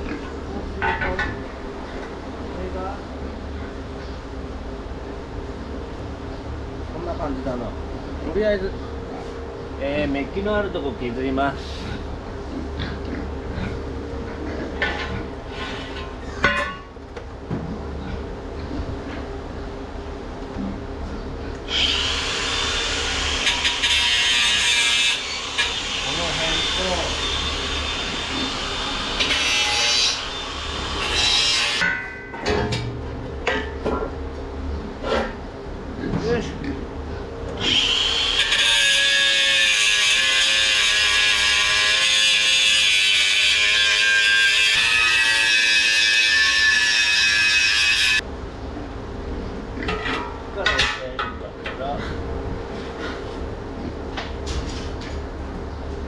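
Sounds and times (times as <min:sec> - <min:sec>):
power grinder grinding metal: 0:21.7 - 0:31.8, 0:37.6 - 0:48.2.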